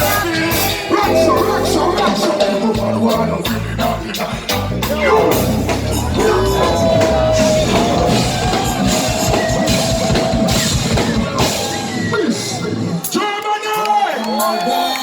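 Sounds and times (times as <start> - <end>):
live band music: 0.0 - 13.1
drum kit strokes: 0.5 - 12.1.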